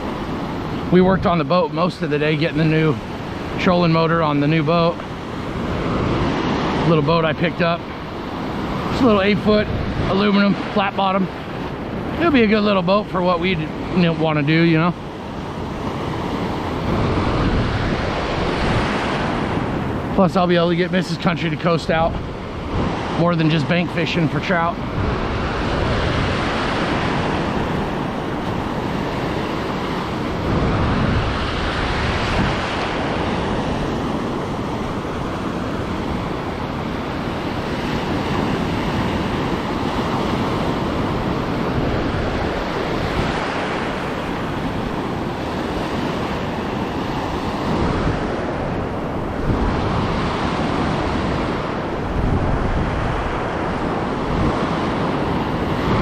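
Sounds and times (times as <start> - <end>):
ocean surf washing onto beach: 0.0 - 56.0
wind rumbling on microphone: 0.0 - 56.0.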